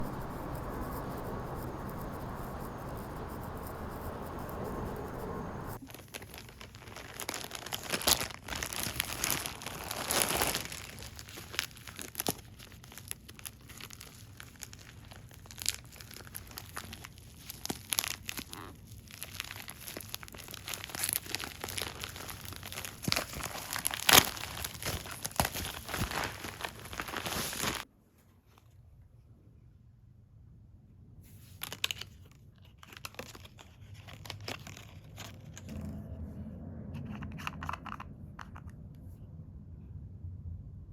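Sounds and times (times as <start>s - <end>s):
steady noise: 0.0s - 5.8s
packaging crinkling and rustling: 5.8s - 27.8s, 31.4s - 35.7s.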